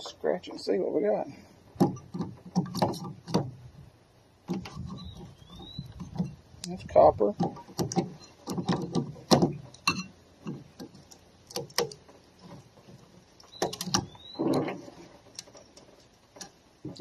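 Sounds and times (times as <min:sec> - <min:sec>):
tool scraping wire: 0:04.5 - 0:06.4.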